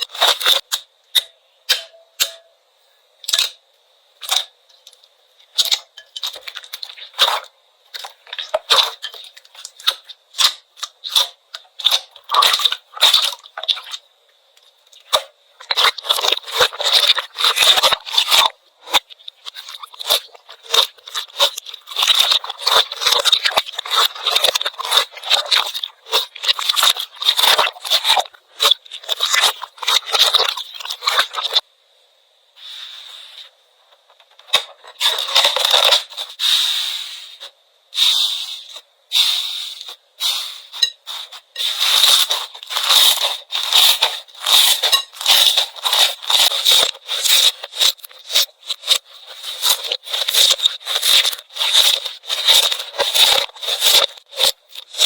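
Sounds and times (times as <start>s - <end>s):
slime crackling and popping: 4.2s - 14.0s, 14.7s - 31.6s, 38.0s - 55.0s.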